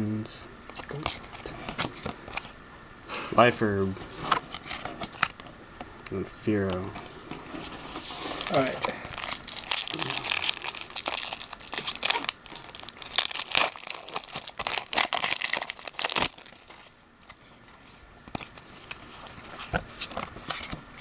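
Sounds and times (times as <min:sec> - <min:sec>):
foil wrapper tearing and crinkling: 0:08.1 - 0:17.3.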